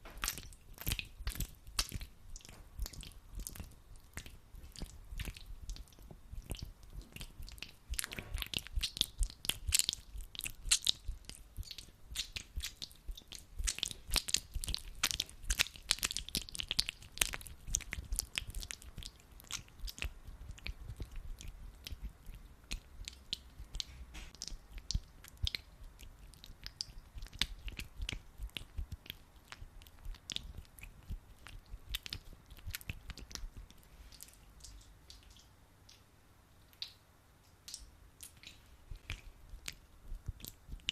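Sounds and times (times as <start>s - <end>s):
hands squishing sticky gel: 0.1s - 36.0s, 37.6s - 40.9s.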